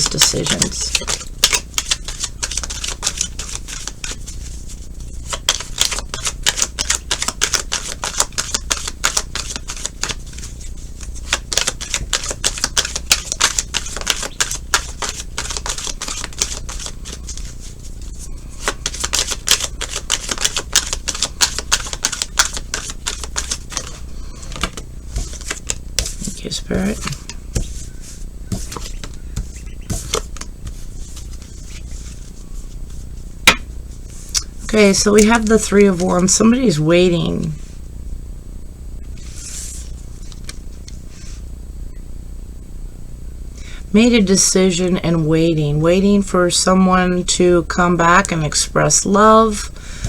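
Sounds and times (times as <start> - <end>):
cards being shuffled: 0.0 - 36.3, 39.1 - 41.4
low steady hum: 0.0 - 50.0.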